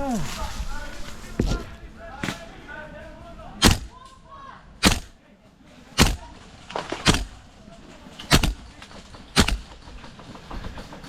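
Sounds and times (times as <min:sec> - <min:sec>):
airsoft gun shots: 0:03.6 - 0:04.0, 0:04.8 - 0:05.2, 0:06.0 - 0:07.4, 0:08.2 - 0:09.9.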